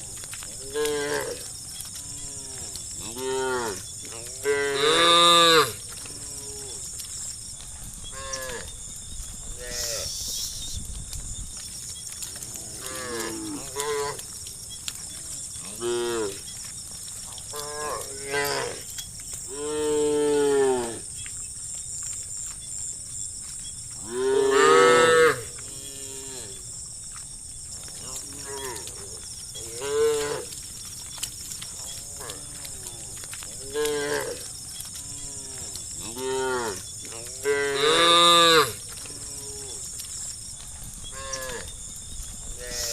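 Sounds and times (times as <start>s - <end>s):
cows mooing: 0.6s - 6.9s, 12.4s - 14.4s, 15.1s - 16.4s, 17.5s - 18.9s, 24.0s - 26.6s, 31.7s - 39.9s, 41.1s - 41.7s.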